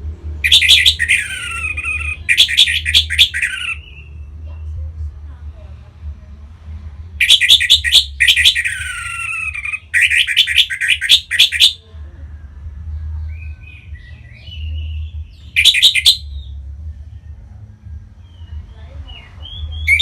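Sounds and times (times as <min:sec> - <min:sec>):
thrush singing: 0:00.4 - 0:04.2, 0:07.2 - 0:11.8, 0:13.3 - 0:16.6.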